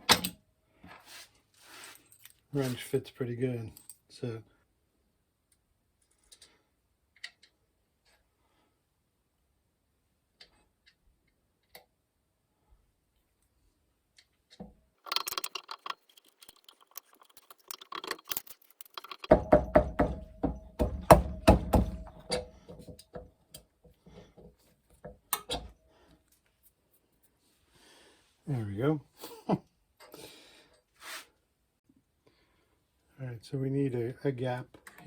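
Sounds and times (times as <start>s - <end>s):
scattered clicks: 15.1s - 19.3s
metal clinking and knocking: 15.1s - 23.3s.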